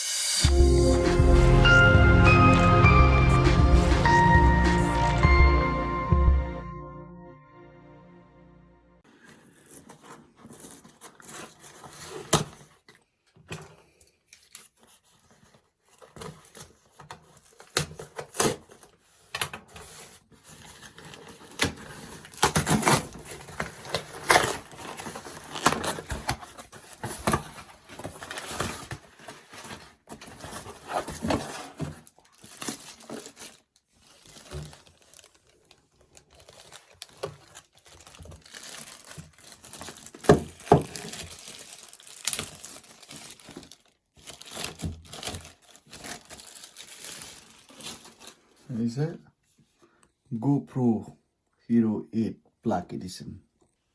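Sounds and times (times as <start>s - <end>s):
packaging tearing and crinkling: 9.2s - 12.9s, 14.3s - 48.6s.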